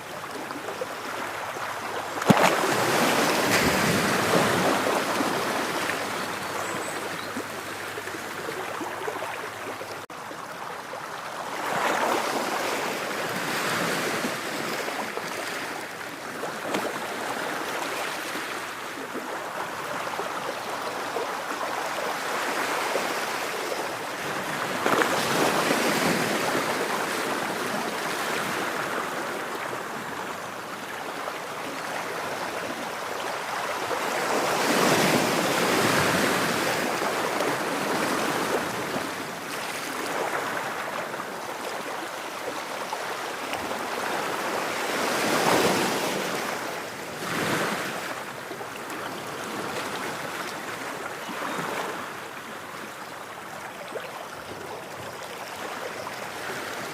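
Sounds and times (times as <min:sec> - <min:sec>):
waves breaking: 0:00.0 - 0:10.1, 0:21.0 - 0:30.3, 0:31.6 - 0:52.4.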